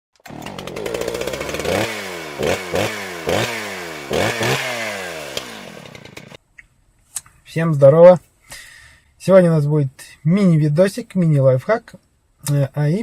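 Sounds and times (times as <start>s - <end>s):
small engine revving: 0.2s - 6.4s.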